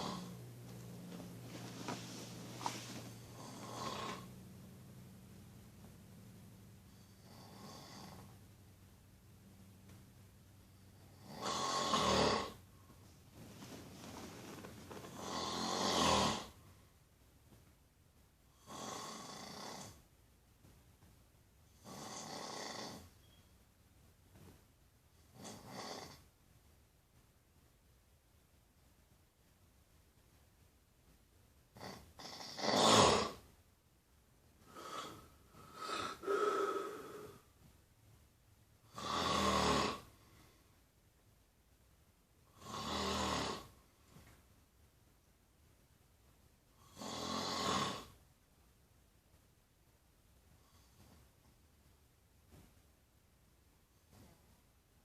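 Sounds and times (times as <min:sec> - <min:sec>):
person snoring: 0:00.0 - 0:00.4, 0:01.6 - 0:04.3, 0:07.0 - 0:08.4, 0:11.0 - 0:12.6, 0:14.9 - 0:16.6, 0:18.6 - 0:20.0, 0:21.8 - 0:23.0, 0:31.8 - 0:33.4, 0:34.7 - 0:37.5, 0:38.9 - 0:40.3, 0:42.5 - 0:43.8, 0:46.8 - 0:48.2.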